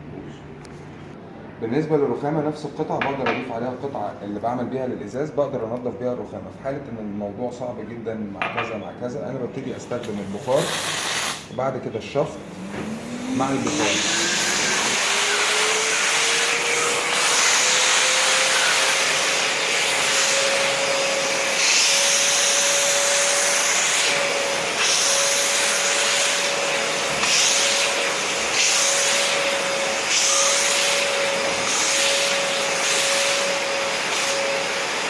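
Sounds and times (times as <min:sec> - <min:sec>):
steam hissing: 0:10.0 - 0:11.5
vacuum motor whine: 0:12.3 - 0:35.0.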